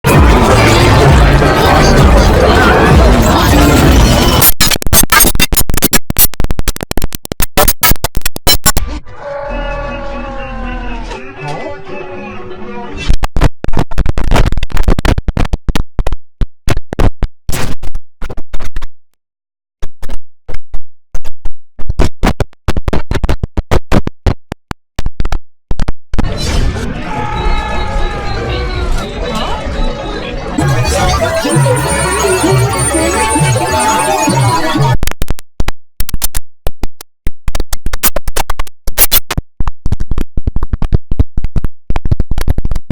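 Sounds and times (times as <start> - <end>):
stuttering glitched computer sound: 0.1 - 8.8, 29.1 - 35.2, 37.7 - 39.4.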